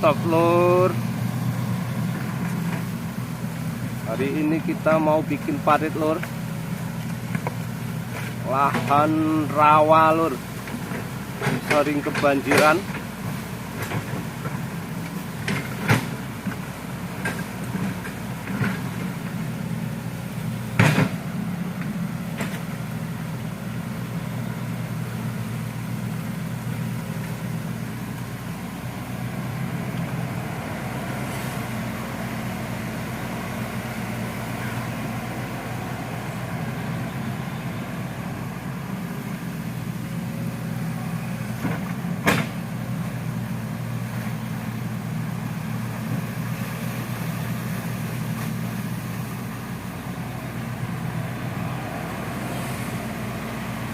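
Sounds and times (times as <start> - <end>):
excavator diesel engine running: 0.0 - 53.9.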